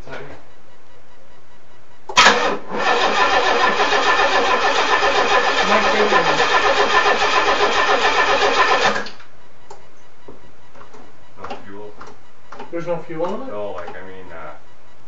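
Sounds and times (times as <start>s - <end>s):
engine cranking on starter: 2.2s - 9.2s.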